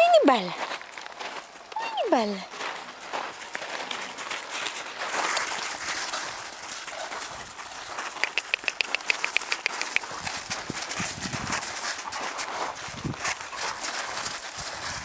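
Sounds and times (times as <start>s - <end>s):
dog rustling: 2.8s - 15.0s
paws clicking on hard surface: 3.0s - 15.0s.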